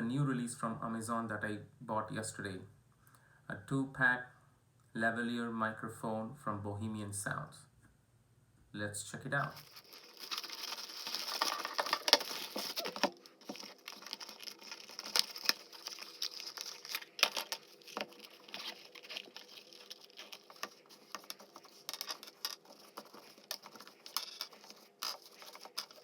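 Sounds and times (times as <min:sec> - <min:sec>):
packaging rustling and crinkling: 0:09.5 - 0:26.0.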